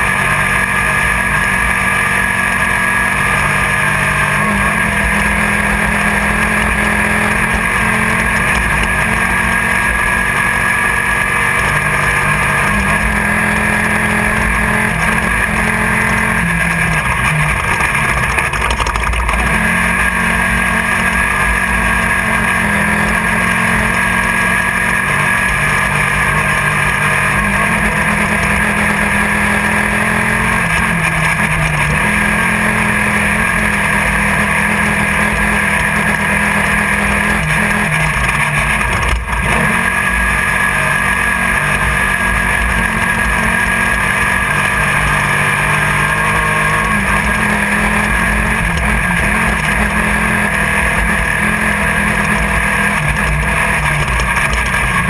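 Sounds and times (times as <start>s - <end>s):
car engine running hard: 0.0s - 55.0s
rattle: 16.5s - 21.8s, 37.6s - 46.2s, 47.0s - 55.0s.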